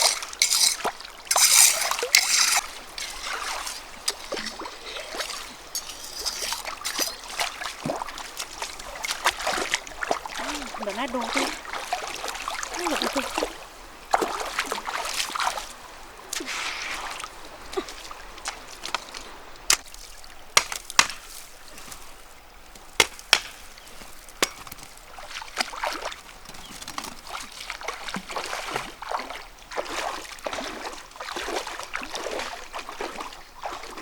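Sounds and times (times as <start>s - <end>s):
water splashing and trickling: 0.0s - 34.0s.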